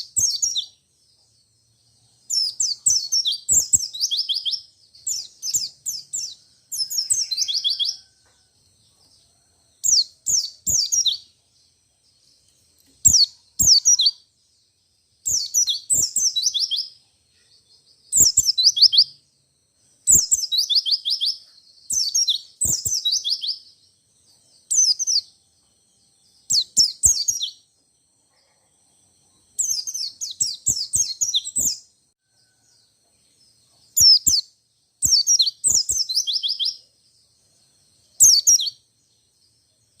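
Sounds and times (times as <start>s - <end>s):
bird singing rolling bursts: 29.5s - 31.8s.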